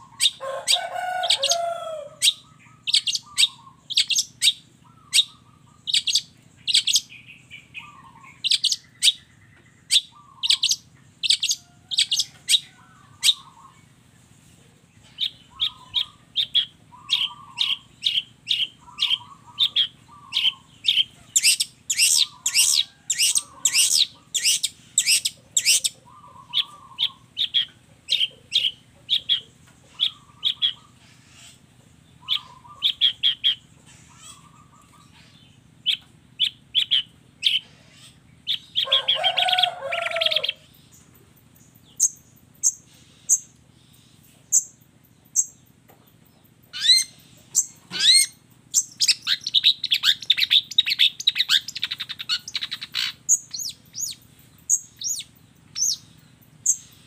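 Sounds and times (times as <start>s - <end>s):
bird harsh chattering: 0.0s - 13.8s, 15.1s - 40.7s, 46.7s - 57.0s
shrike singing sharp chirps: 15.1s - 29.4s.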